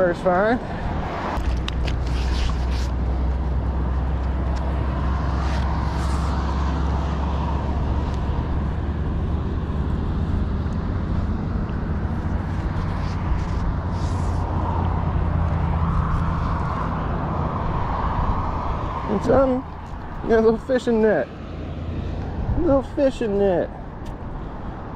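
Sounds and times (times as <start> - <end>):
road traffic rumble: 0.0 - 24.9
vehicle passing: 0.0 - 24.9.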